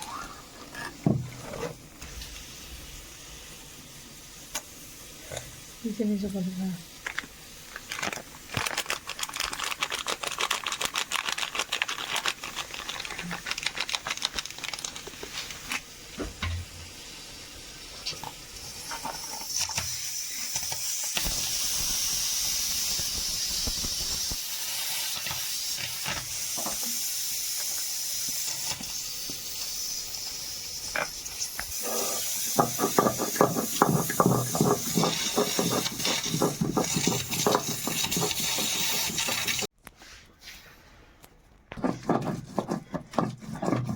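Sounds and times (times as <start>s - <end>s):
food frying in hot oil: 2.0s - 39.7s
knocking in pan: 32.5s - 38.2s.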